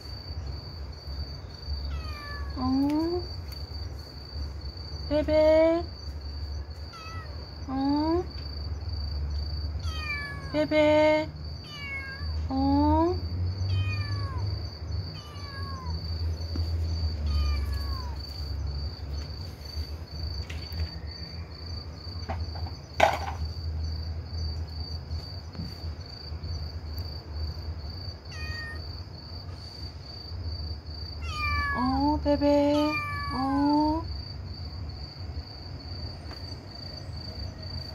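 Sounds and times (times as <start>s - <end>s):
kitten meowing: 1.9s - 3.1s, 6.9s - 7.4s, 9.8s - 10.5s, 11.6s - 12.3s, 13.7s - 14.5s, 15.2s - 16.0s, 17.3s - 18.2s, 28.3s - 28.8s, 31.2s - 32.0s, 32.7s - 33.6s.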